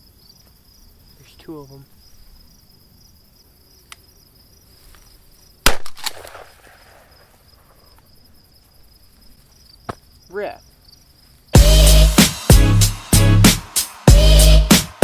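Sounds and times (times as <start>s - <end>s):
crickets chirping: 0.0s - 13.1s
shotgun shots: 5.6s - 7.3s.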